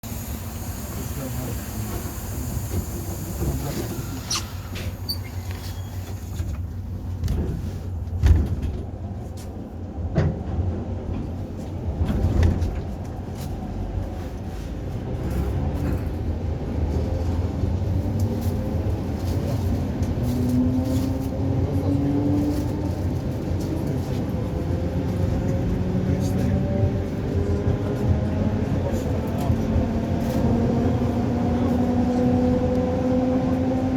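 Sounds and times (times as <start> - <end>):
traction motor whine: 0.0 - 6.4
train running gear rumble: 0.0 - 33.9.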